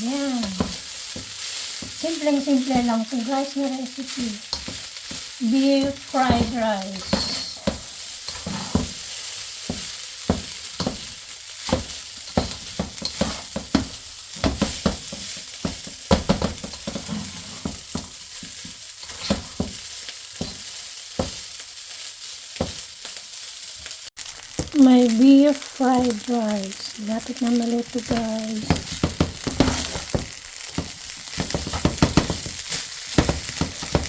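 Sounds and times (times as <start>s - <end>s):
rice sizzling in a pan: 0.0s - 34.0s
utensil scraping a pan: 4.2s - 19.8s, 20.4s - 21.4s, 28.0s - 34.0s.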